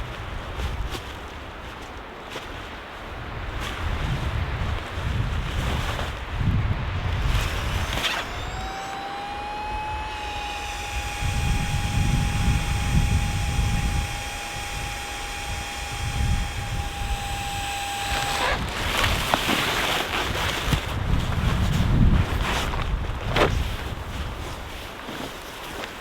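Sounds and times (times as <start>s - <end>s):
wind buffeting microphone: 3.6s - 19.5s, 20.1s - 24.7s.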